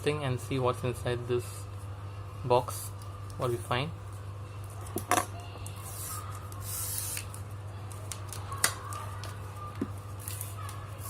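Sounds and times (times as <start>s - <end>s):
tearing hiss: 5.8s - 7.4s.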